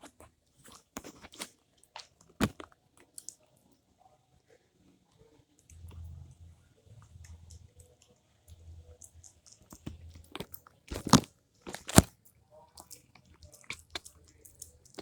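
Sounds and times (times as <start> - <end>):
dog chewing and crunching: 9.5 - 12.1.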